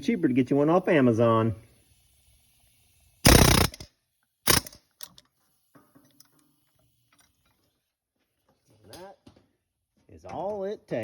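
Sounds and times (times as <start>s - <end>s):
pneumatic air hammer bursts: 3.2s - 5.1s.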